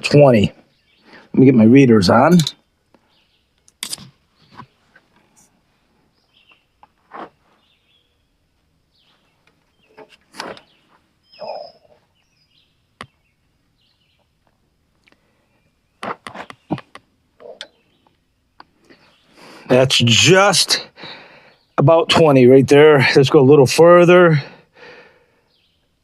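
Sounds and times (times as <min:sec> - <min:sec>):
hand tools clicking and knocking: 0:02.2 - 0:02.6.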